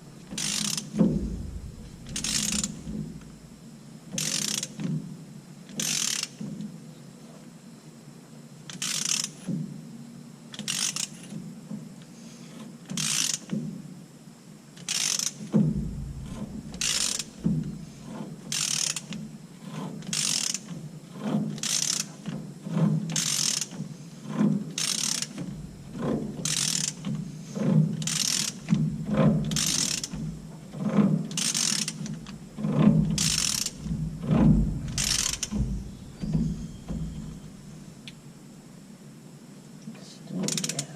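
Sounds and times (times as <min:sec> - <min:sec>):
low thump: 0:00.0 - 0:03.7, 0:15.6 - 0:18.1, 0:25.4 - 0:26.6, 0:28.5 - 0:31.0, 0:32.2 - 0:38.2
hand ratchet clicking: 0:26.0 - 0:27.0, 0:29.5 - 0:30.3, 0:31.3 - 0:37.3.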